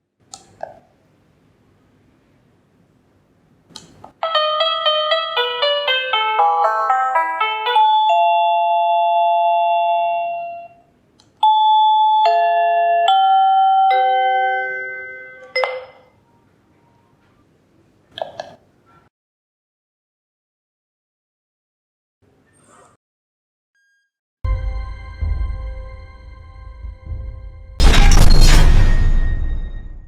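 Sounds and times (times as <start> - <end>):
electronic doorbell chime: 4.2 - 10.8, 11.4 - 16.1.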